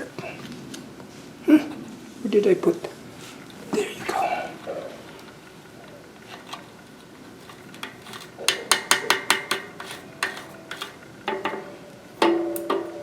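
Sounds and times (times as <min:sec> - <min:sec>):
tool on metal hub: 0:06.2 - 0:13.0.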